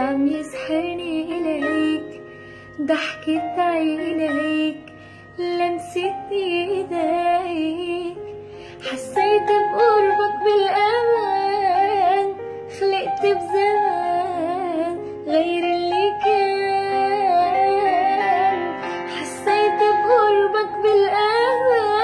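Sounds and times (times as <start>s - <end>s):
woman singing with vibrato: 8.8s - 22.0s.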